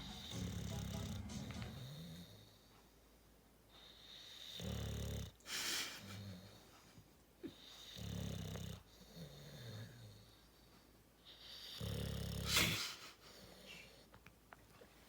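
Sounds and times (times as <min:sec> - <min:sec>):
low buzzing snores: 0:00.0 - 0:02.6, 0:03.8 - 0:05.4, 0:07.5 - 0:10.4, 0:11.4 - 0:12.8.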